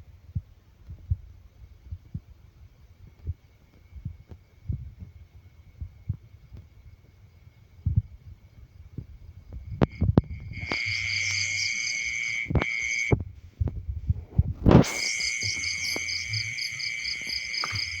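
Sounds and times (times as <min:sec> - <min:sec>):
insect trill: 0:04.7 - 0:13.2, 0:14.7 - 0:18.0
low knocks and thumps: 0:07.8 - 0:11.1, 0:12.6 - 0:18.0.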